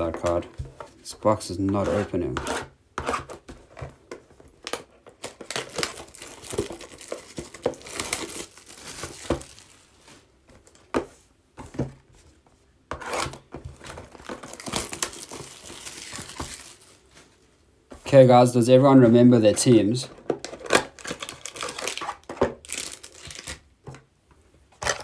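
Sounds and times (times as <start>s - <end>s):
packaging crinkling and tearing: 4.6s - 9.9s, 13.2s - 17.1s, 20.4s - 23.7s.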